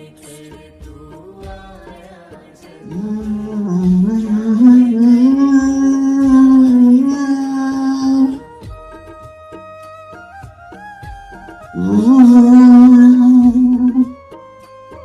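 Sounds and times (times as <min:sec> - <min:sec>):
soft instrumental accompaniment: 0:00.0 - 0:15.0
person singing long note: 0:02.8 - 0:08.5, 0:11.8 - 0:14.2.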